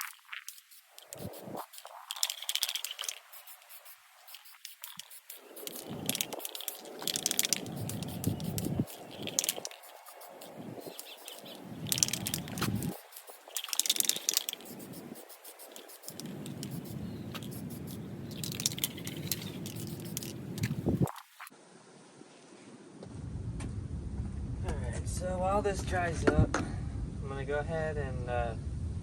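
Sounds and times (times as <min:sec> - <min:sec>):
aerosol spray can hissing: 0:00.0 - 0:21.5.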